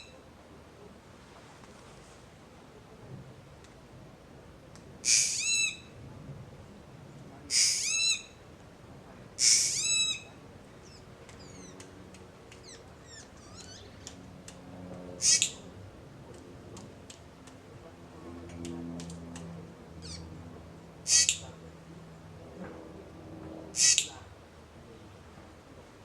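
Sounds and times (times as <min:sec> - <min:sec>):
bird giving harsh rasping calls: 0:05.0 - 0:05.8, 0:07.5 - 0:08.3, 0:09.4 - 0:11.8, 0:15.2 - 0:15.6, 0:20.0 - 0:20.3, 0:21.1 - 0:21.4, 0:23.7 - 0:24.1.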